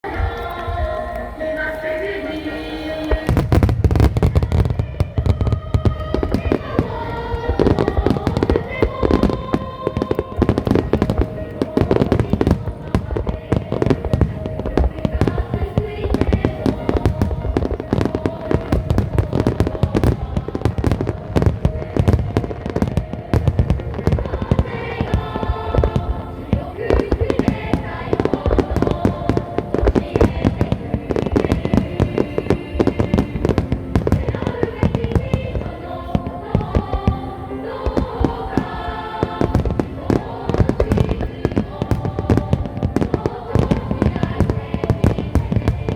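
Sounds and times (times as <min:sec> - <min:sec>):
fireworks bangs and crackles: 0:00.0 - 0:45.9
music with held notes: 0:00.0 - 0:45.9.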